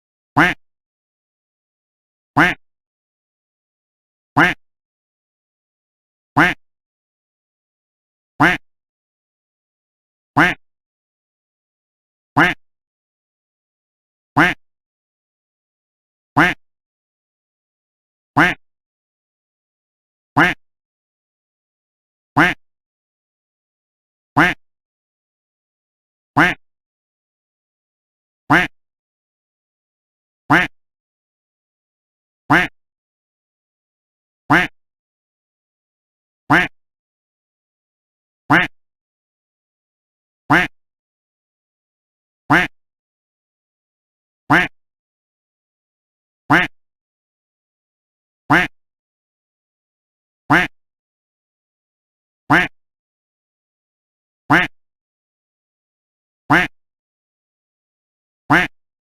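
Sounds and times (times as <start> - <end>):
duck quacks: 0.4 - 0.6, 2.4 - 2.6, 4.4 - 4.6, 6.4 - 6.6, 8.4 - 8.6, 10.4 - 10.6, 12.4 - 12.6, 14.4 - 14.6, 16.4 - 16.6, 18.4 - 18.6, 20.4 - 20.6, 22.4 - 22.6, 24.4 - 24.6, 26.4 - 26.6, 28.5 - 28.7, 30.5 - 30.7, 32.5 - 32.8, 34.5 - 34.8, 36.5 - 36.7, 38.5 - 38.7, 40.5 - 40.7, 42.5 - 42.7, 44.5 - 44.7, 46.5 - 46.7, 48.5 - 48.7, 50.5 - 50.7, 52.5 - 52.7, 54.5 - 54.7, 56.5 - 56.7, 58.5 - 58.7.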